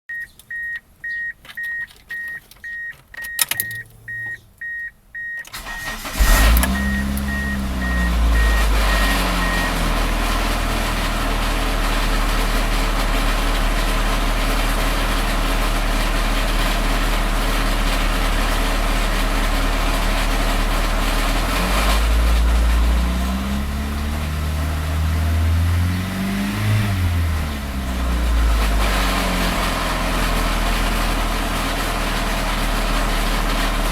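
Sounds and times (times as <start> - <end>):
car warning chime beeping: 0.1 - 10.5
car engine cranking and starting: 0.1 - 33.9
car engine revving: 5.5 - 33.9.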